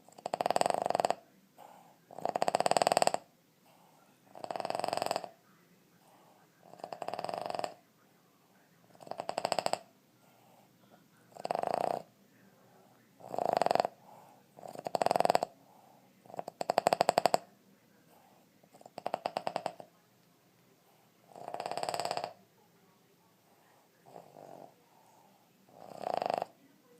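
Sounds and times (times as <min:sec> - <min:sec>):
dog snoring with rattling flutter: 0:00.0 - 0:01.2, 0:02.1 - 0:03.3, 0:04.3 - 0:05.3, 0:06.7 - 0:07.8, 0:08.9 - 0:09.9, 0:11.3 - 0:12.1, 0:13.2 - 0:14.0, 0:14.6 - 0:15.5, 0:16.3 - 0:17.5, 0:18.7 - 0:19.9, 0:21.3 - 0:22.4, 0:24.0 - 0:24.8, 0:25.7 - 0:26.5.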